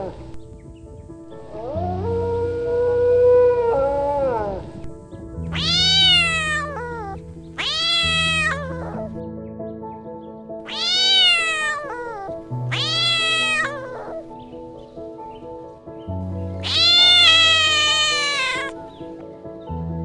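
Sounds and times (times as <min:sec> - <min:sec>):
background music: 0:00.0 - 0:20.0
cat meowing: 0:05.5 - 0:09.2, 0:10.6 - 0:14.3, 0:16.6 - 0:18.8.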